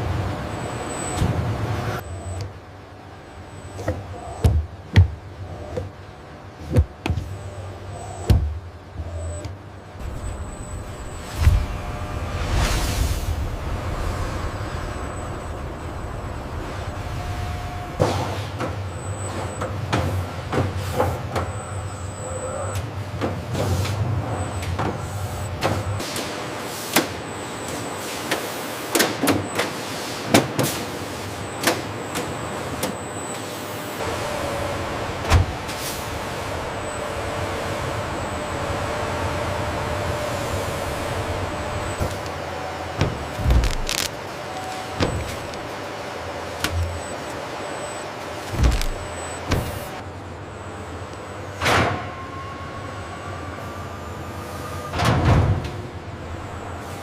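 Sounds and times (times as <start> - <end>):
machinery hum: 0.0 - 57.0
low hum: 7.5 - 18.0, 36.4 - 51.3.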